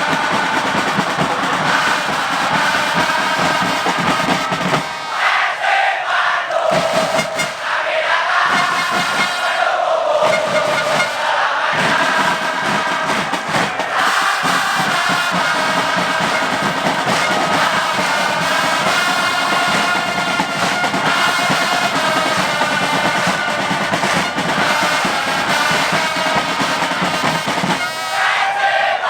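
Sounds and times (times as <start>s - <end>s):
bass drums beating: 0.0s - 5.2s, 6.6s - 7.6s, 11.8s - 27.8s
crowd chanting in unison: 0.0s - 29.0s.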